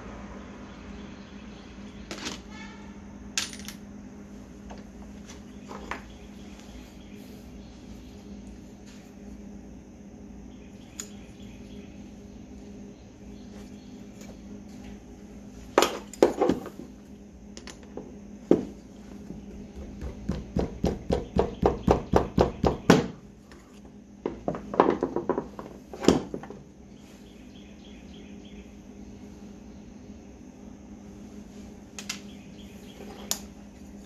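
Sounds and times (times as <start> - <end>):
faint steady hum: 0.0 - 34.0
metal parts clinking on workbench: 3.4 - 3.8.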